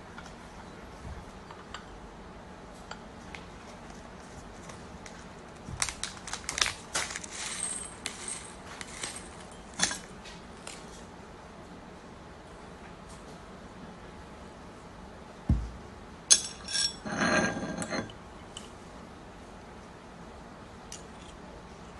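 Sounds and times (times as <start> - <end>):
small hard objects clinking: 5.8 - 10.0.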